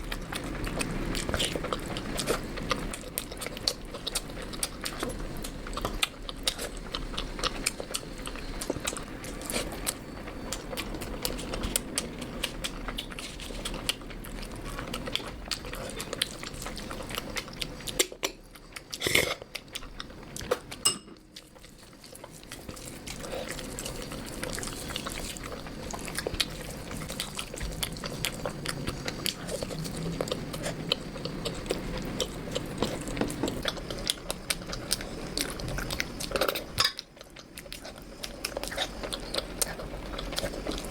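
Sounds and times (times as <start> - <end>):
person chewing food: 0.0 - 40.9
cutlery clinking on dish: 20.8 - 21.2.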